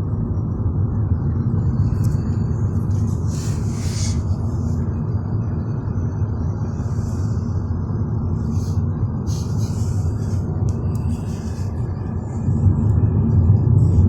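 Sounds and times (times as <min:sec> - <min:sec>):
car road noise rumble: 0:00.0 - 0:14.0.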